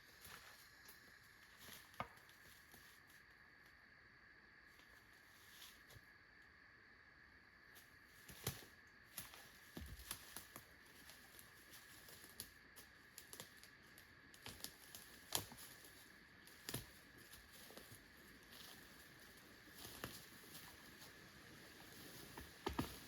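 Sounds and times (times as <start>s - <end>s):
footsteps on dry leaves: 14.4s - 23.0s.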